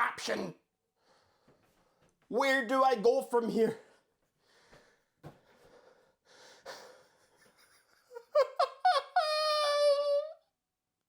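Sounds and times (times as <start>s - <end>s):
person breathing quietly: 1.0s - 2.1s, 3.8s - 7.4s.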